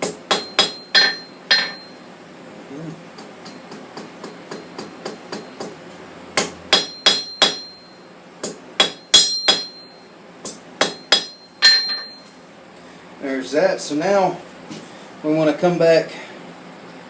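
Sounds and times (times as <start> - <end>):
hammer striking hot steel on anvil: 0.0 - 2.0, 3.2 - 5.8, 6.4 - 12.3.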